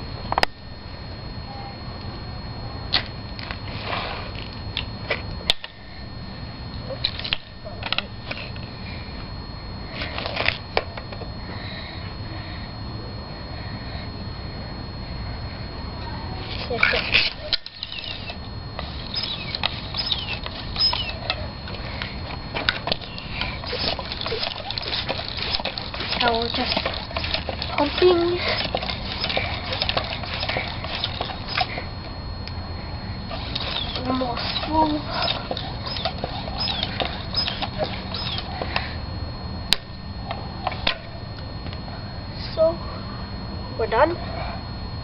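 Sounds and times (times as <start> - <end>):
steady low hum: 0.0 - 45.0
tire pump clicking and squeaking: 16.4 - 31.9, 33.3 - 39.0.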